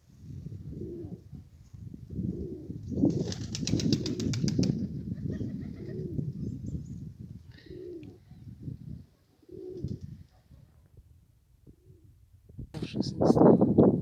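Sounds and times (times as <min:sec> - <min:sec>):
pigeons cooing: 0:00.6 - 0:01.3, 0:02.1 - 0:10.6
wings flapping: 0:03.0 - 0:06.1.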